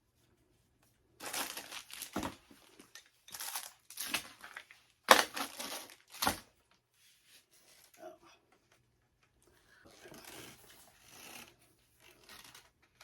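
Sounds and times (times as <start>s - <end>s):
packaging crumpling and crinkling: 1.2s - 6.5s.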